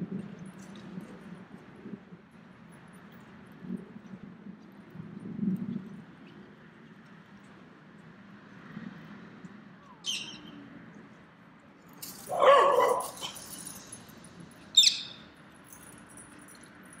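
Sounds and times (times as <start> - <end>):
dog yelping: 12.3 - 13.6
high chirp: 14.8 - 15.2.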